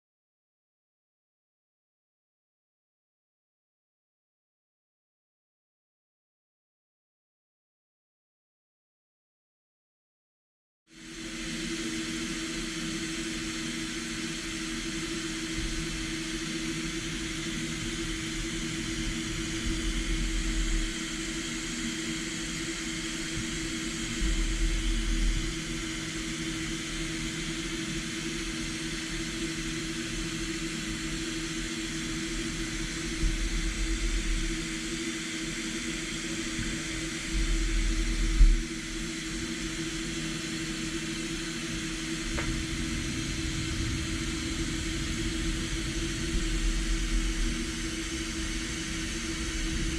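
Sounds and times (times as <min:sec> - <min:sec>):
low rumble: 0:42.1 - 0:49.9.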